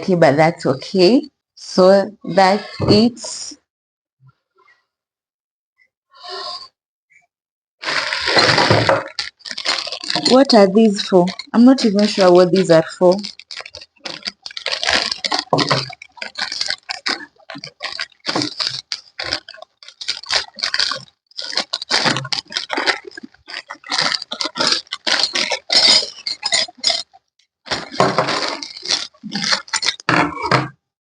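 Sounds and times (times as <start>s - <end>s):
small metal parts clinking: 8.3s - 27.1s.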